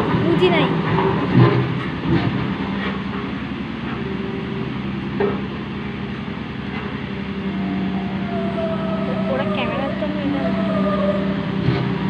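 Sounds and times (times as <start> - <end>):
voices: 0.0 - 1.1, 6.3 - 12.0
road roller engine droning: 0.0 - 12.0.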